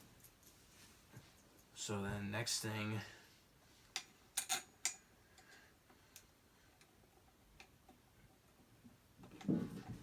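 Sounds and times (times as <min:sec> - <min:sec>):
faint plastic parts clicking: 0:03.9 - 0:10.0.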